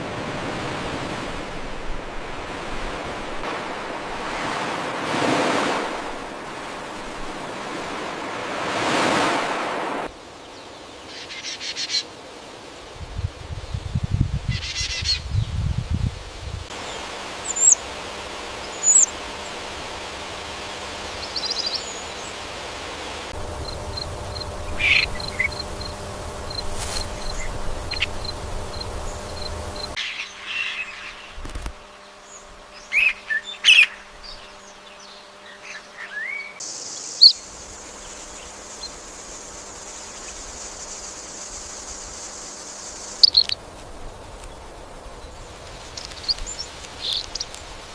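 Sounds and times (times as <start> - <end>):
outdoor background hiss: 0.0 - 47.9
birds chirping: 16.7 - 17.9, 18.5 - 19.7, 20.4 - 37.4, 38.0 - 43.6.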